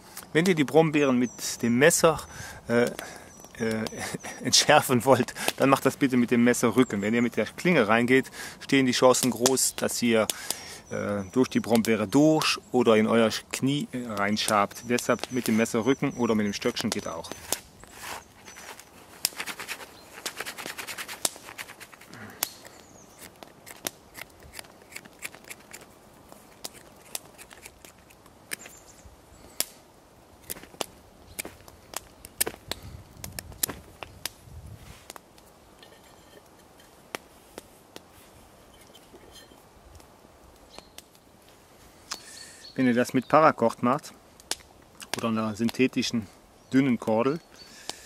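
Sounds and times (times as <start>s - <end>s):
knife scraping a cane: 17.3s - 28.8s, 35.8s - 37.0s, 38.6s - 39.6s
cane clicking and snapping: 19.2s - 28.7s.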